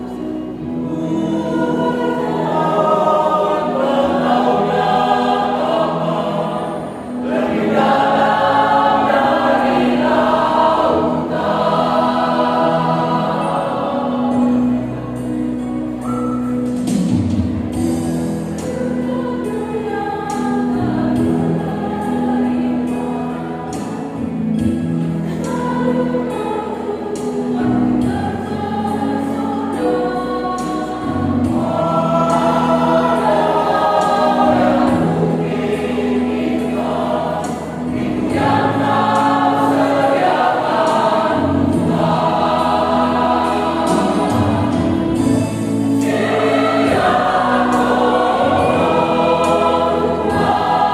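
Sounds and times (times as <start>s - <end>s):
church choir singing: 0.0s - 50.9s.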